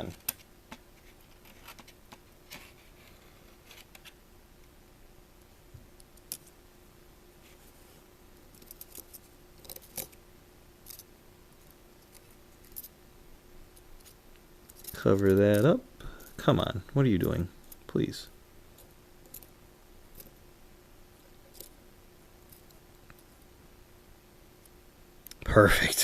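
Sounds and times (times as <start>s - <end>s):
small metal parts clicking: 8.5s - 10.2s, 10.8s - 11.1s, 14.0s - 16.4s, 18.8s - 19.5s, 21.4s - 21.8s.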